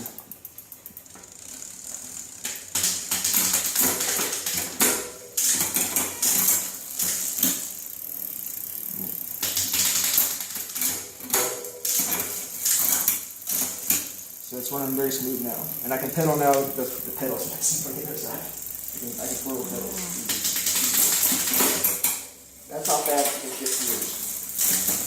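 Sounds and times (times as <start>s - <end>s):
bicycle chain rattling and clicking: 0.0s - 25.0s.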